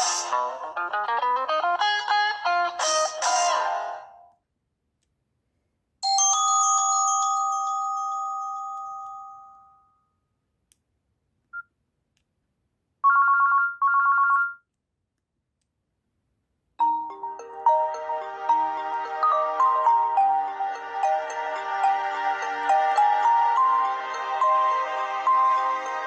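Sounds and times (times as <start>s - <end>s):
melodic ringtone: 6.0s - 9.9s, 16.8s - 26.0s
two-note chime: 16.8s - 26.0s.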